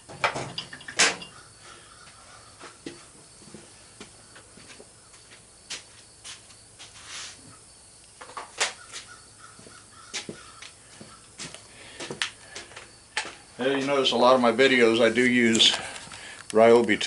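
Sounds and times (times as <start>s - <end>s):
metal parts clicking and knocking: 0.1s - 1.4s.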